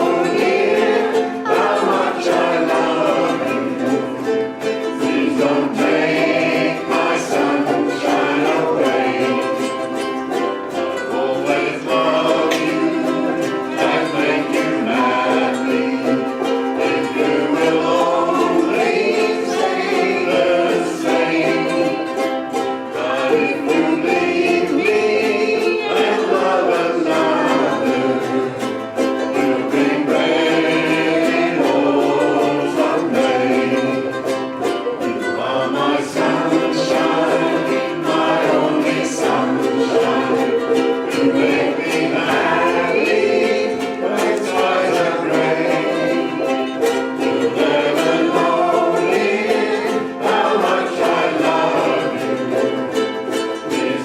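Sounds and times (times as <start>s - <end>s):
group of voices singing: 0.0s - 54.0s
ukuleles strumming: 0.0s - 54.0s.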